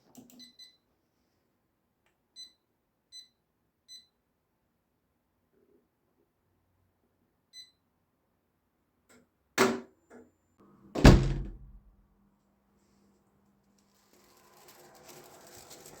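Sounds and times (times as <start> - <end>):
heavy thunks: 11.0 - 11.8.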